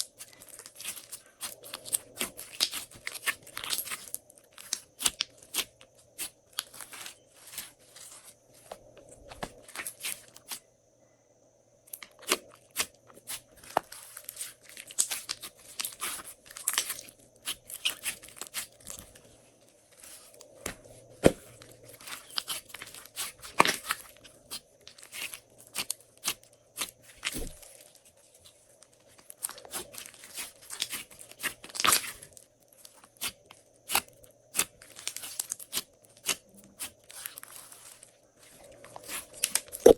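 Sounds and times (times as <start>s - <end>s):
slime squished by hand: 33.2s - 39.9s.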